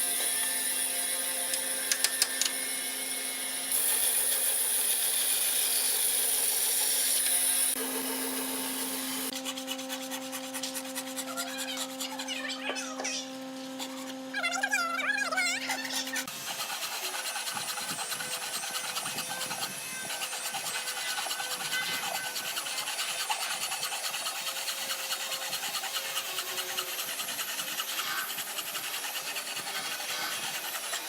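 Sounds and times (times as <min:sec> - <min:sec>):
tool scraping hardwood: 0:15.7 - 0:31.0.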